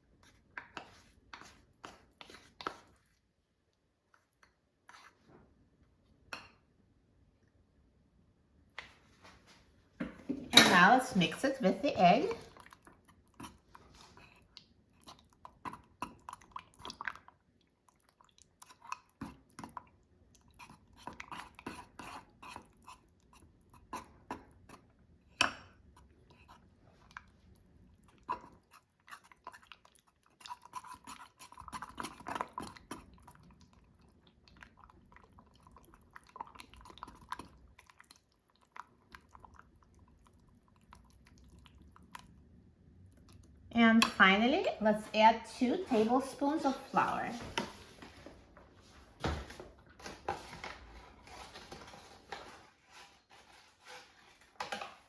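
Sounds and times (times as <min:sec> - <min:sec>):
utensil scraping in a mug: 0:20.6 - 0:24.8, 0:44.0 - 0:47.8, 0:51.2 - 0:55.0.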